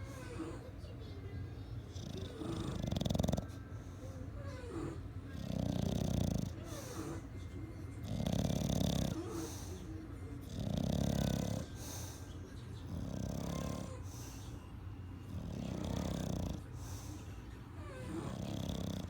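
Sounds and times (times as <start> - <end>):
dog snoring: 1.9 - 7.3, 8.0 - 12.2, 12.8 - 14.5, 15.2 - 19.0.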